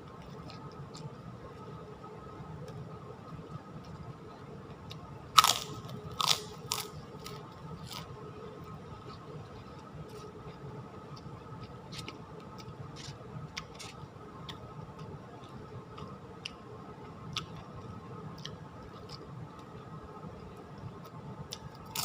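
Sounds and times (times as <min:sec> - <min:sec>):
faint steady hum: 0:00.0 - 0:22.0
person chewing food: 0:04.9 - 0:08.2, 0:09.0 - 0:16.6, 0:21.5 - 0:22.0.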